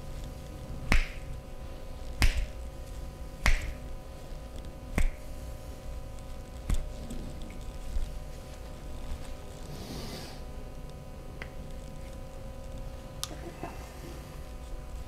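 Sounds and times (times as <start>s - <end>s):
hands snapping during massage: 0.9s - 1.4s, 2.1s - 2.6s, 3.4s - 3.9s, 4.9s - 5.3s, 6.6s - 7.6s.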